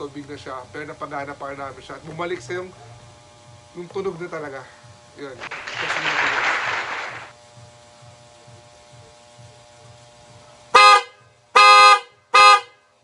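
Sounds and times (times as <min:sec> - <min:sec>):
electric horn blasts: 0:10.7 - 0:12.9.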